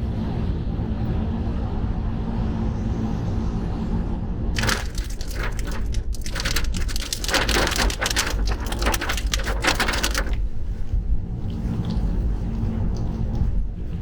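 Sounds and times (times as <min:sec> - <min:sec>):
heavy rain hitting a car: 0:04.6 - 0:10.5.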